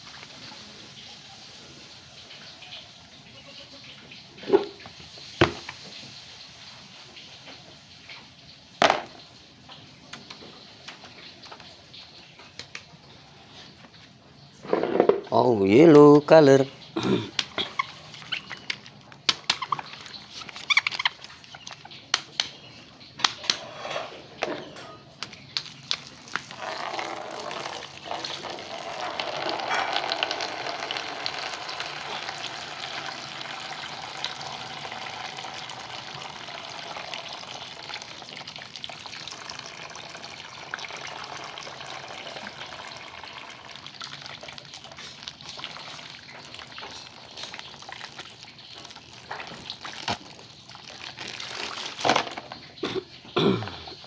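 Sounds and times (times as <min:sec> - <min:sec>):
water running from a tap: 0:25.5 - 0:52.6.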